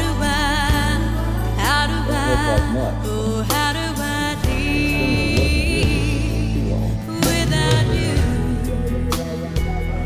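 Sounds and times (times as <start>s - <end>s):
bass and instruments: 0.0s - 10.0s
person singing a held melody: 2.0s - 3.3s.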